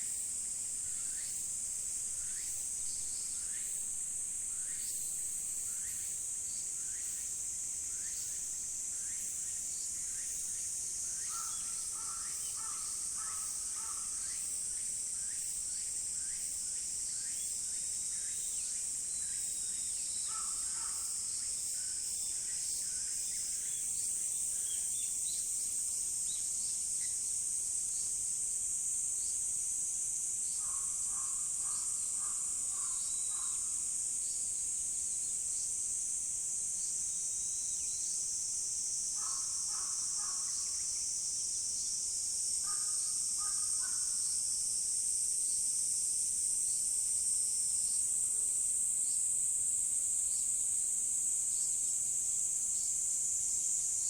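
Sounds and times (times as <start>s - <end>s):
insect chorus shrilling: 10.2s - 15.6s, 39.2s - 42.0s, 42.6s - 44.7s
crow cawing: 11.3s - 14.2s.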